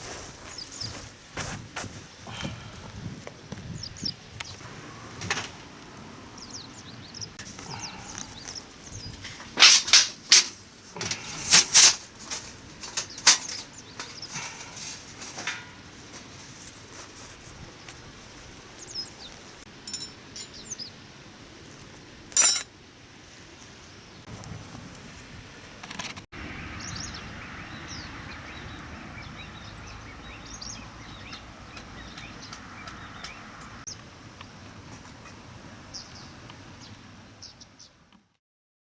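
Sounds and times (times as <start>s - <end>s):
faint birdsong: 0.2s - 1.2s, 1.9s - 16.9s, 17.6s - 21.7s, 26.4s - 38.0s.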